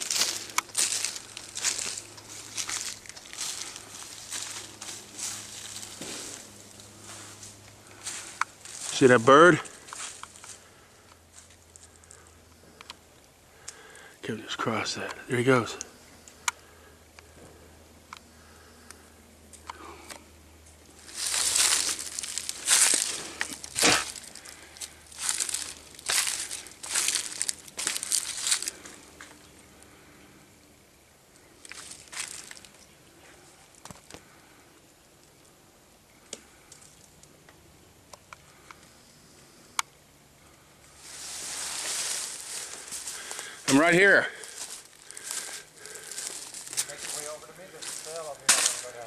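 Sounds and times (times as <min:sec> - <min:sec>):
footsteps through dry leaves: 0:00.0 - 0:10.7, 0:20.9 - 0:29.4, 0:31.6 - 0:32.8, 0:41.0 - 0:49.0
faint snaps and ticks: 0:12.8 - 0:13.8.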